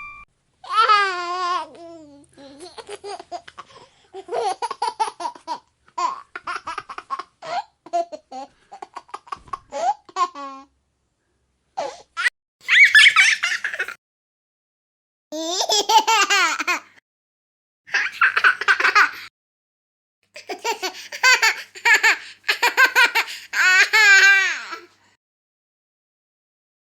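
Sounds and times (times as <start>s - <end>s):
baby laughing: 0.6s - 10.7s, 11.8s - 14.0s, 15.4s - 16.9s, 17.9s - 19.3s, 20.4s - 24.9s.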